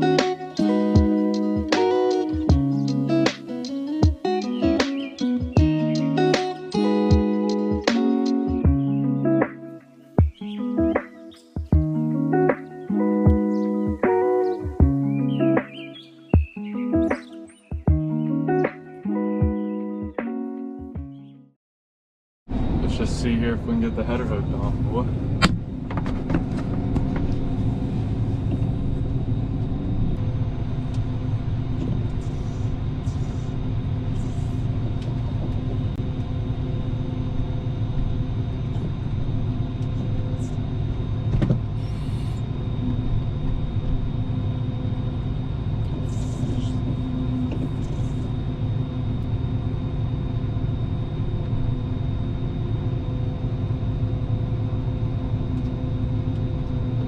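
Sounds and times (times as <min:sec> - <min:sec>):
thin steady whine: 0:22.5 - 0:57.0.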